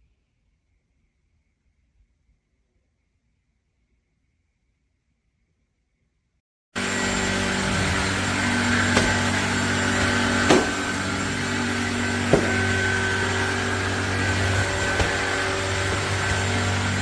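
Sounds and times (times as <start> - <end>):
vacuum cleaner motor whining: 6.8 - 17.0.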